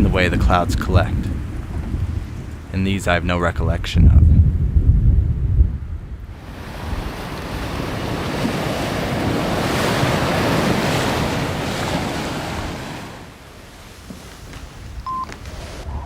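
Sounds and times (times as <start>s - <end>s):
ocean wave rushing in: 6.3s - 16.0s.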